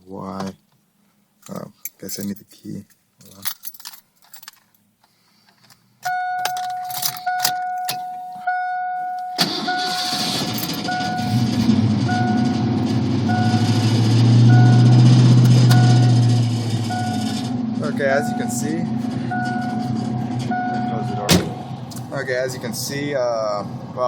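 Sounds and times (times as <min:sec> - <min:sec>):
keys jingling: 0:03.2 - 0:04.7, 0:06.4 - 0:08.2
dashboard warning chime: 0:06.0 - 0:21.4
car engine cranking and starting: 0:09.3 - 0:22.2.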